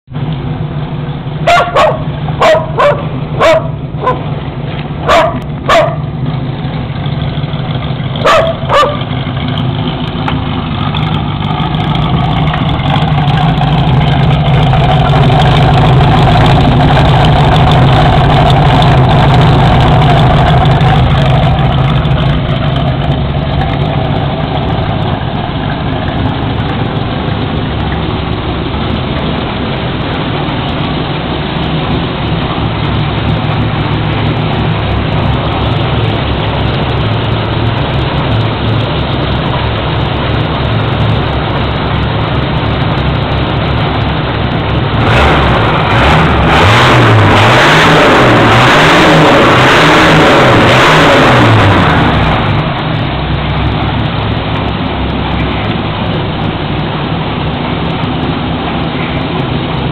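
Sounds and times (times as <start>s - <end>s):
car engines idling: 0.1s - 59.9s
dog barking: 1.4s - 4.3s, 5.0s - 6.0s, 8.2s - 9.1s.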